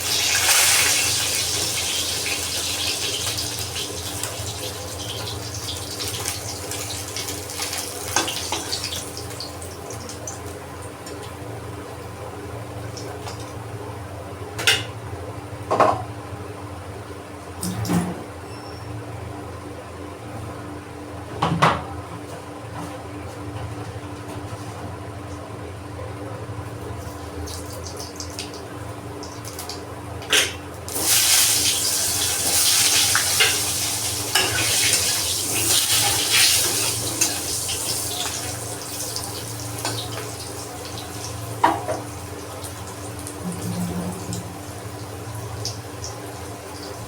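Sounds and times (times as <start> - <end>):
pan hissing and crackling: 30.9 - 43.7.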